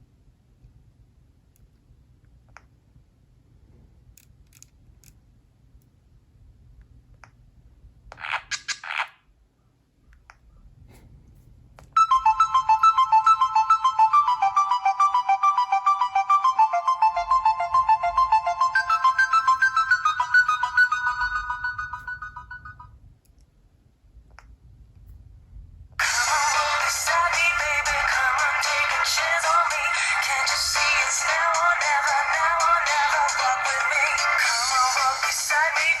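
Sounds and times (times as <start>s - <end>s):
phone ringtone melody: 12.0s - 22.9s, 26.0s - 36.0s.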